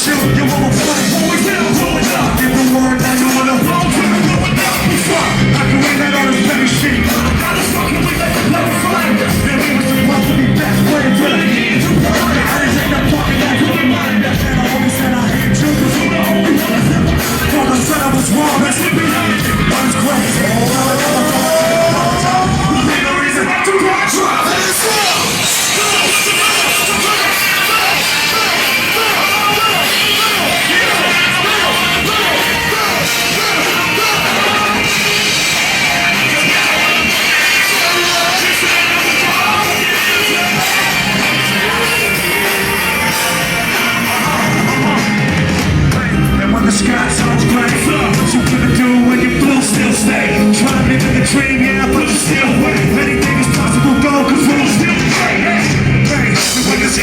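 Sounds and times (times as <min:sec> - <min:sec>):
live rock and rap music: 0:00.0 - 0:57.0
shouted vocals: 0:00.0 - 0:57.0.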